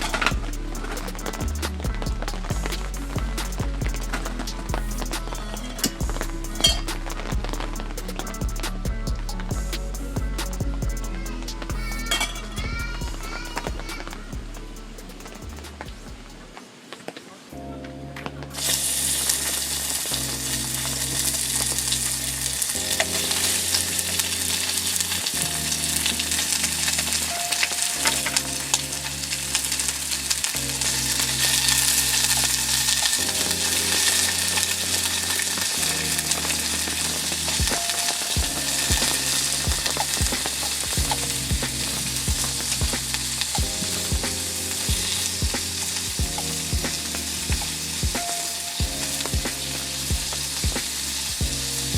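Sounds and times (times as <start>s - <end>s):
regular beat: 0.0s - 16.5s, 30.6s - 51.9s
background music with chords: 0.0s - 16.6s, 17.6s - 51.9s
food sizzling in a pan: 18.6s - 51.9s.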